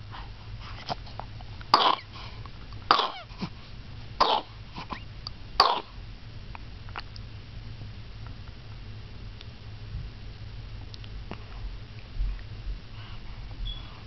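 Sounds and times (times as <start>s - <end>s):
person coughing: 2.9s - 3.3s, 4.2s - 4.5s.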